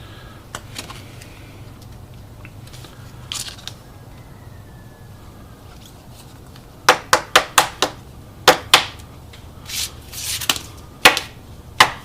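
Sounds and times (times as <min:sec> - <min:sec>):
cards sliding rustle: 0:00.6 - 0:01.4, 0:02.6 - 0:03.8, 0:09.6 - 0:10.8
cards clicking and tapping: 0:10.3 - 0:12.0.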